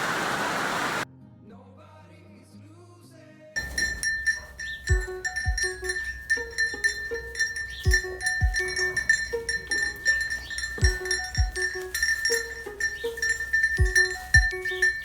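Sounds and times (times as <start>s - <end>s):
held high tone: 3.6s - 15.0s
jingling percussion: 3.6s - 15.0s
kick drum thuds: 4.9s - 5.8s, 7.9s - 8.7s, 10.8s - 11.6s, 13.8s - 14.6s.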